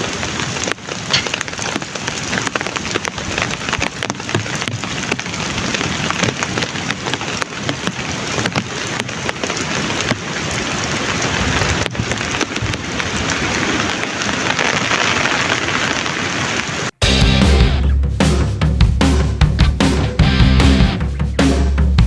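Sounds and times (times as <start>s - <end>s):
raindrops striking close by: 0.0s - 17.0s
heavy rain falling: 0.0s - 17.8s.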